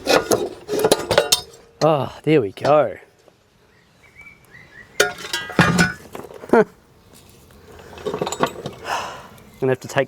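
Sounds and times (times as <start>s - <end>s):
steel parts and tools clinking: 0.0s - 1.8s, 5.0s - 6.2s, 7.9s - 8.8s.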